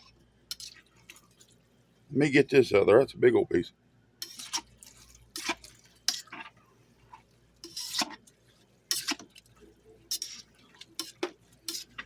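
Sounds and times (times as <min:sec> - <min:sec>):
utensil scraping a pot: 0:04.2 - 0:04.7, 0:05.3 - 0:06.5, 0:07.6 - 0:08.2, 0:08.9 - 0:09.3, 0:10.1 - 0:12.0.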